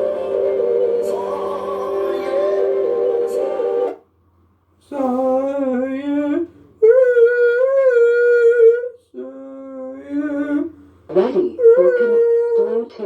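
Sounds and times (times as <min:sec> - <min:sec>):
voice-like wavering notes: 0:00.0 - 0:04.0.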